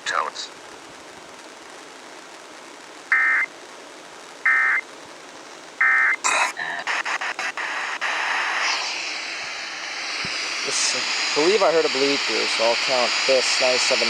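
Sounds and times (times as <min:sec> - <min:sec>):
radio crackles: 0:00.0 - 0:14.0
steady radio hiss: 0:00.0 - 0:14.0
harsh digital screeches: 0:03.1 - 0:03.5.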